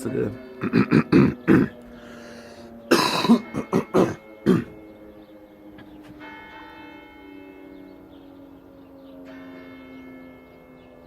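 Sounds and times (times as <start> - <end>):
church bells ringing: 0.0 - 11.0
person coughing: 0.6 - 1.8, 2.9 - 4.8.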